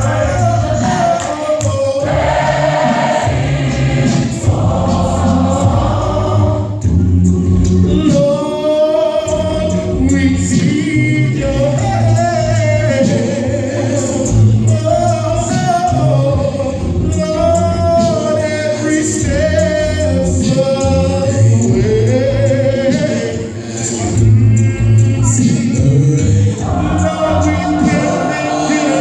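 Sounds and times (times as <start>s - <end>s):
voices singing gospel: 0.0s - 29.0s
low accompaniment: 2.0s - 8.0s.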